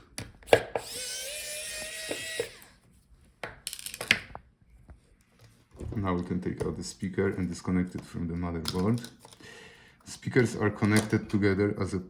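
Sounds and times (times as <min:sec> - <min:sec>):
electric screwdriver whirring: 0:00.5 - 0:02.7
tool and screw clicks and rattles: 0:03.5 - 0:04.4.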